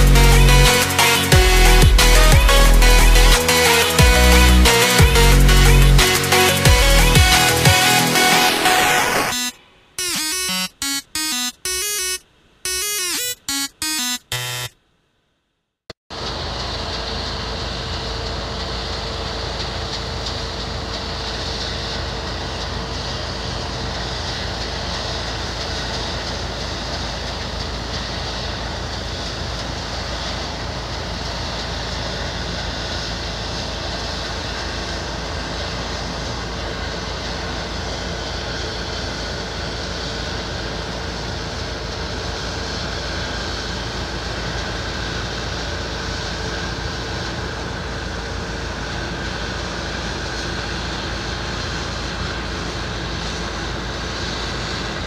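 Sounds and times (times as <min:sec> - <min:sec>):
harvest machine diesel engine running: 0:00.0 - 0:08.5
electronic music: 0:00.0 - 0:14.8.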